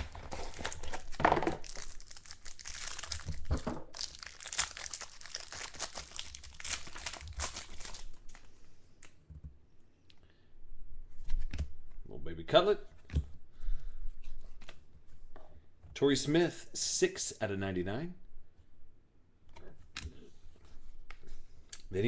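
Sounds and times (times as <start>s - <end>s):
plastic wrapping tearing and crinkling: 0.0s - 8.5s.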